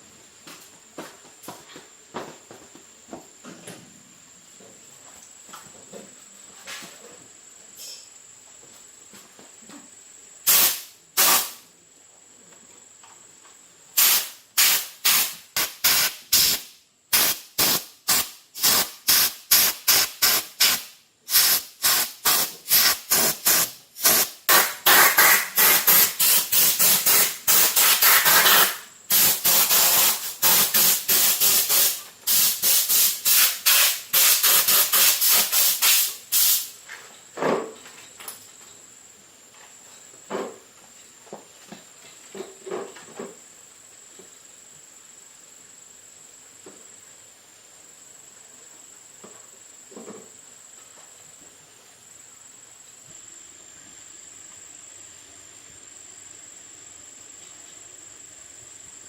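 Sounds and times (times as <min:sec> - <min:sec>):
short hissing sprays: 0:10.4 - 0:11.6, 0:14.0 - 0:36.8.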